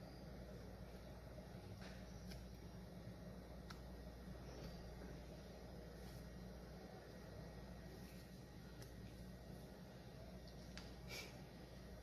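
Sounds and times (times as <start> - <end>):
steady low hum: 0.0 - 12.0.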